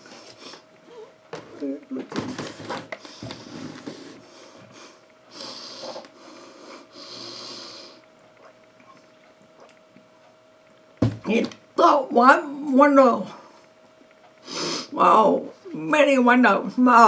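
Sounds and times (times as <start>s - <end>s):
person breathing close: 3.0s - 8.0s.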